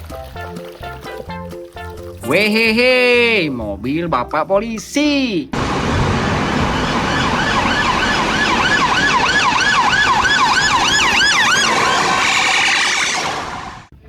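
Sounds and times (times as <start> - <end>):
police siren wailing: 5.6 - 13.9.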